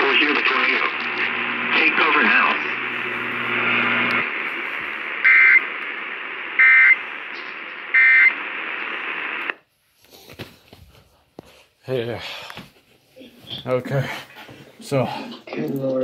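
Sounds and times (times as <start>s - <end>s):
radio static hiss: 0.0s - 9.7s.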